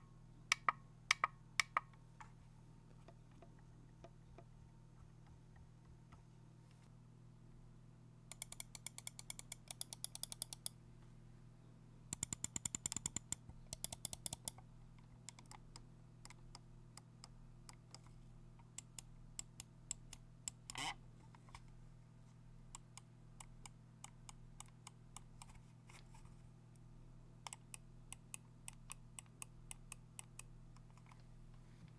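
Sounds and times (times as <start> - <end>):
mouse scroll wheel ticks: 8.3 - 10.7, 12.1 - 14.6, 15.3 - 18.1, 18.7 - 20.9, 22.8 - 25.6, 27.4 - 31.2.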